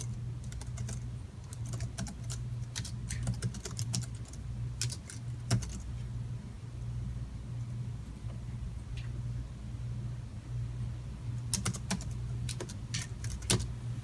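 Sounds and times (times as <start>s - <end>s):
keyboard typing: 0.0s - 5.9s, 11.4s - 13.8s
steady low hum: 0.0s - 14.0s.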